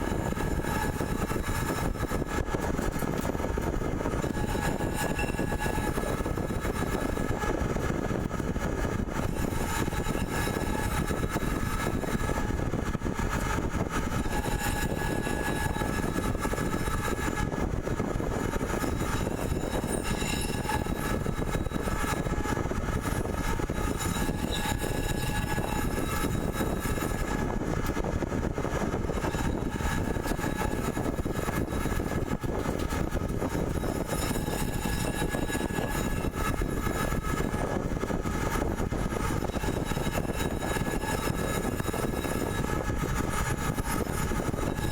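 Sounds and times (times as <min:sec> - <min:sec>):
pipe threading machine running: 0:18.3 - 0:44.9.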